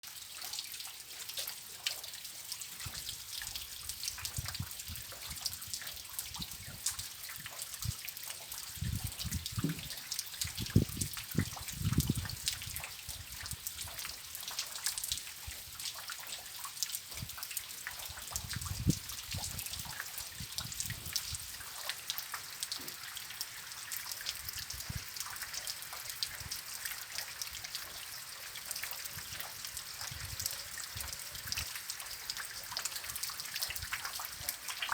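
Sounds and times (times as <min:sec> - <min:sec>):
rain pattering: 0:00.0 - 0:34.9
water dripping and trickling: 0:00.0 - 0:34.9
dull low thumps: 0:09.5 - 0:10.0.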